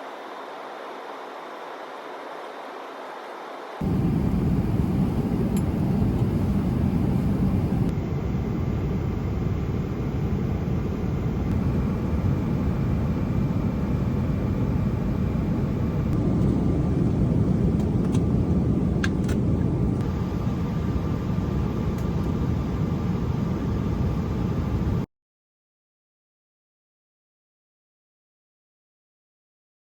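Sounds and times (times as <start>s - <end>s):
airliner cabin jet rumble: 3.8s - 25.1s.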